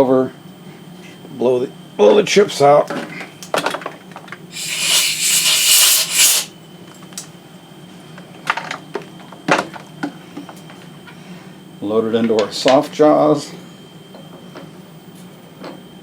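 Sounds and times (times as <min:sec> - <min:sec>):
compressed air blow gun hissing: 0:04.5 - 0:06.5.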